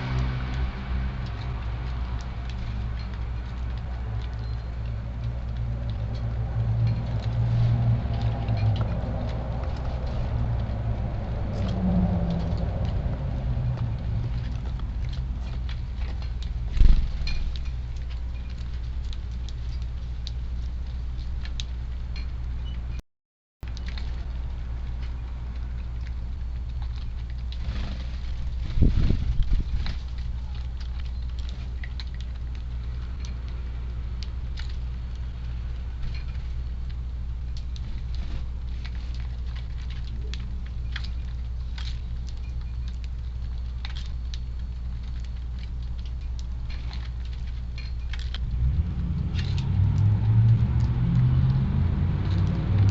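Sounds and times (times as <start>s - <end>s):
sparrows pecking and hopping: 0.0s - 23.0s, 23.6s - 52.9s
wind buffeting microphone: 28.2s - 30.4s.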